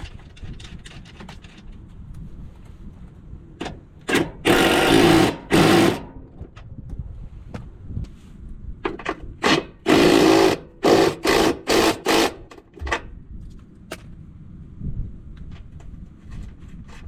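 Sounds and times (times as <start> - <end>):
power tool bursts: 4.1 - 6.1, 9.4 - 12.6.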